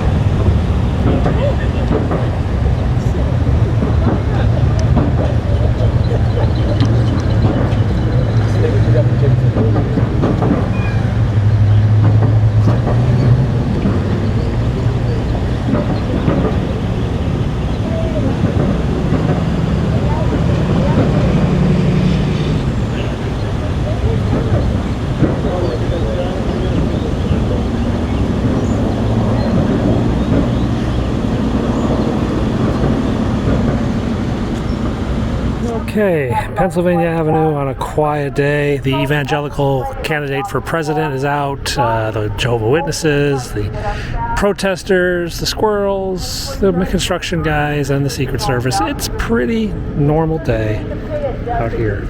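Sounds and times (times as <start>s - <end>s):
heavy vehicle engines humming: 0.0s - 52.0s
steady low tones: 0.0s - 52.0s.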